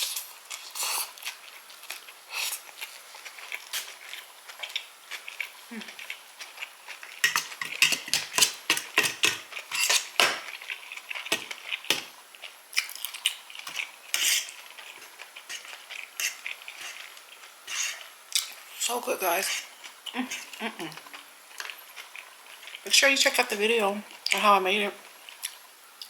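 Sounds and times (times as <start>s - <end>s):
utensils clicking on a dish: 7.2s - 10.4s.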